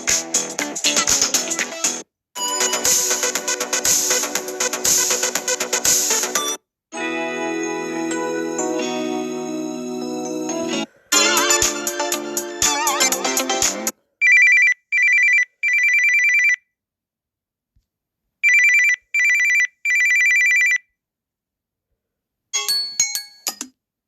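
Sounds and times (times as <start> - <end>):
electronic telephone ring: 14.2 - 16.6, 18.4 - 20.8.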